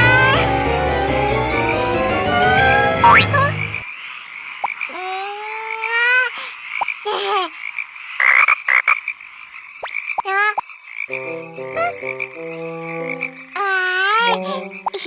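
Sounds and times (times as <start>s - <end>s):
cartoon frog croaks: 3.0s - 3.6s, 4.6s - 9.1s, 9.8s - 15.0s.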